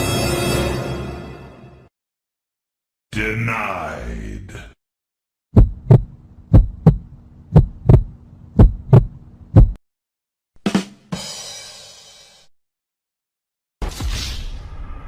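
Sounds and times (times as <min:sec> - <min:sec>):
heartbeat thumps: 0:05.5 - 0:09.8.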